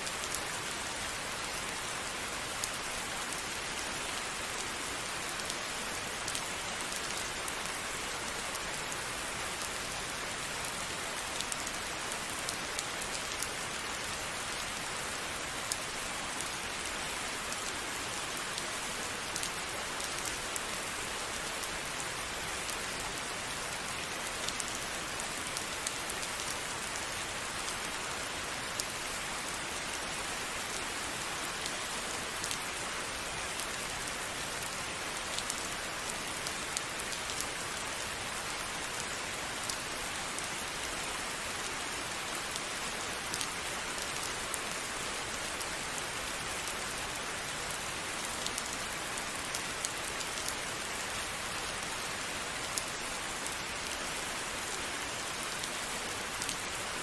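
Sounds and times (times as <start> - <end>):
steady rain: 0.0 - 57.0
raindrops ticking on a surface: 1.1 - 41.5.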